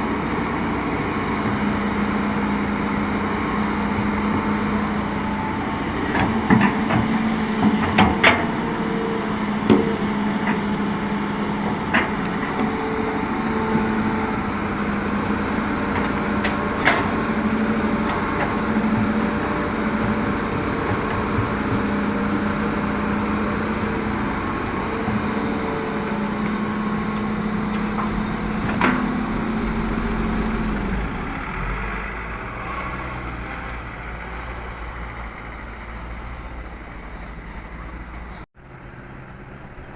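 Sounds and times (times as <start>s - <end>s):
diesel engine running: 0.0s - 39.9s
metallic clanks and knocks: 6.1s - 8.7s, 15.9s - 21.9s.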